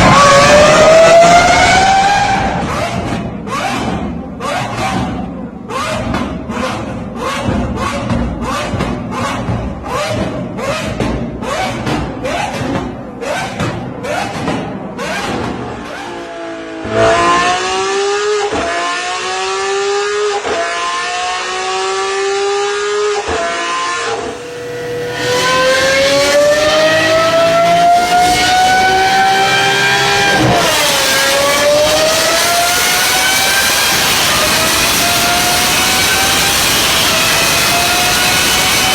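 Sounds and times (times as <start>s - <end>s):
car engine accelerating through gears: 0.0s - 38.9s.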